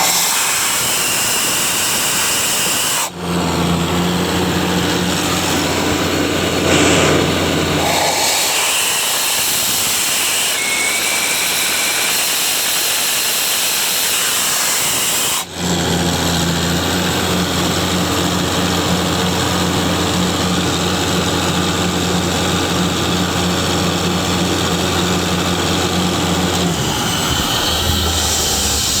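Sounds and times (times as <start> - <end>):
low compressor engine drone: 3.2 - 8.8, 24.7 - 29.0
loud high hiss: 5.4 - 10.6.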